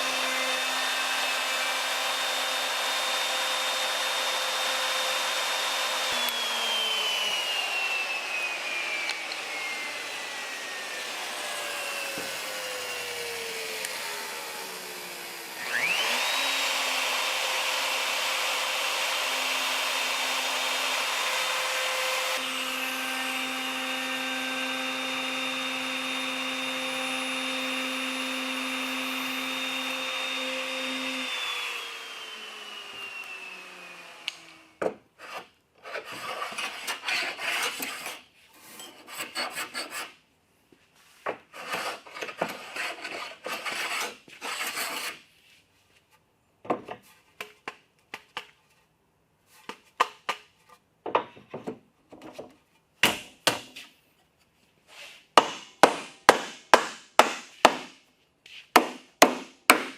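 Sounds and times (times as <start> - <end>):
power tool motor running: 0.0 - 34.7
hand tool rubbing on wood: 54.9 - 55.3.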